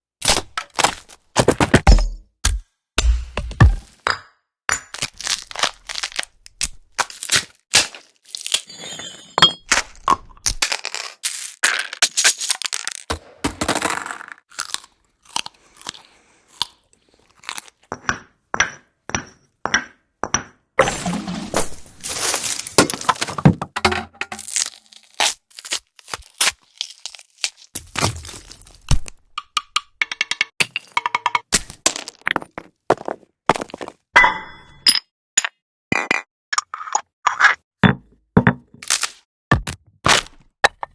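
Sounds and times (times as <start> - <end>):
crunchy tearing snaps: 5.1 - 8.5
glassy clinks: 8.7 - 9.6.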